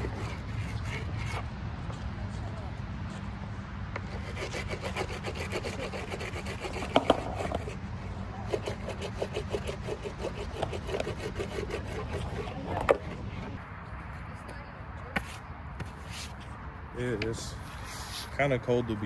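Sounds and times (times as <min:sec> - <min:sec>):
razor blade scraping grip tape: 0:04.2 - 0:07.8, 0:08.6 - 0:13.2.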